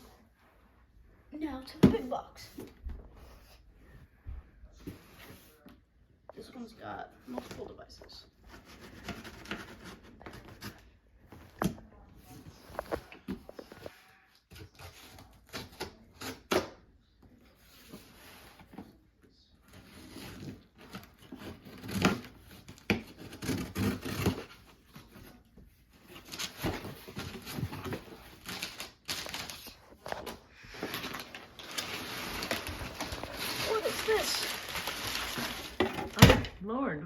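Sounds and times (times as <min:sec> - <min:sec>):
cardboard box being unpacked: 0:08.4 - 0:13.9, 0:19.6 - 0:36.5
rustling packing material: 0:19.7 - 0:36.6.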